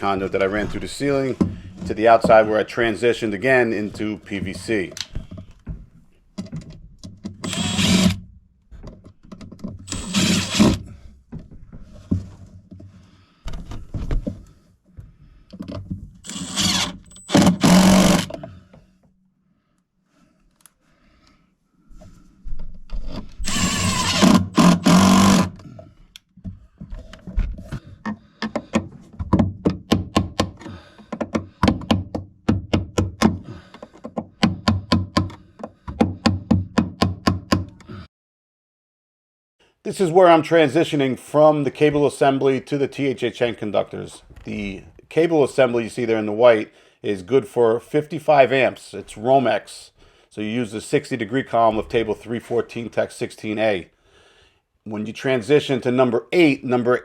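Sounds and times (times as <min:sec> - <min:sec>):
power tool bursts: 0:07.4 - 0:08.2, 0:09.9 - 0:10.8, 0:16.3 - 0:18.3, 0:23.4 - 0:25.6.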